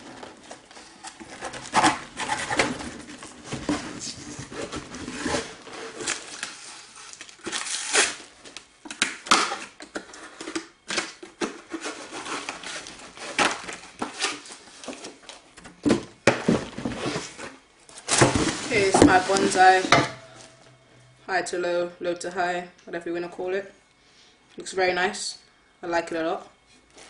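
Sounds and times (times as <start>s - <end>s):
packaging rustling and tearing: 0.0s - 15.6s.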